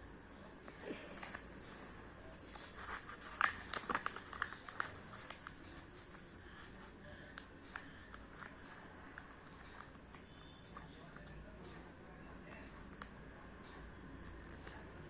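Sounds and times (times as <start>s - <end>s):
hands tapping and rustling materials: 0.7s - 11.8s.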